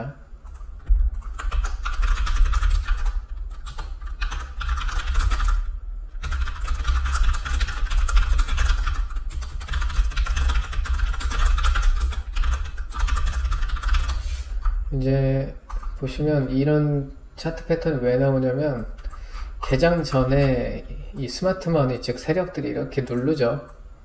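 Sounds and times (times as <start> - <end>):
typing on computer keyboard: 0.4 - 14.8, 15.7 - 16.0.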